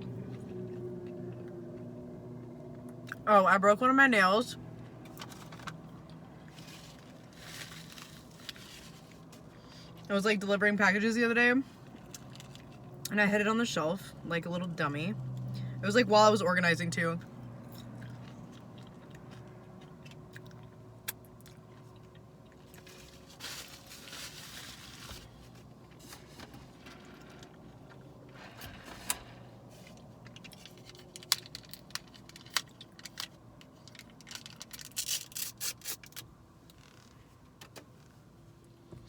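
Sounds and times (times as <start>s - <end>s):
food packaging rustling: 6.5s - 9.4s, 22.6s - 26.5s
person chewing food: 17.6s - 22.9s.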